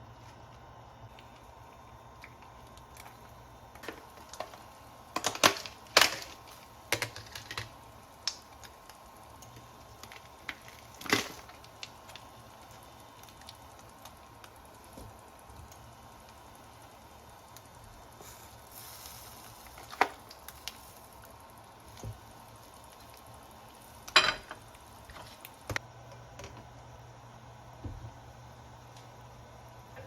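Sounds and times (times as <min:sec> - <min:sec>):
faint steady hum: 0:00.0 - 0:30.0
small objects clicking and knocking: 0:02.2 - 0:12.3.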